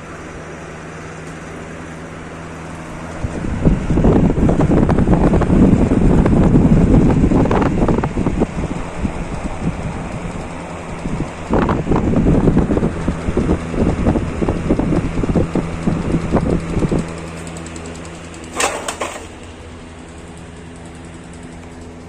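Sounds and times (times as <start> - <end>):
electric fan motor hum: 0.0 - 22.0
wind buffeting microphone: 2.8 - 18.0
short sharp noise: 18.5 - 19.5.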